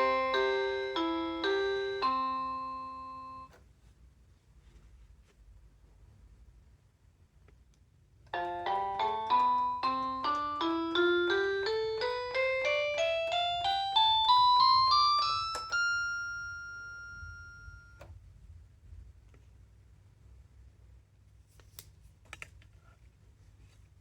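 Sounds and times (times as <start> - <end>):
toy keyboard rising notes: 0.0 - 3.5, 8.3 - 18.0.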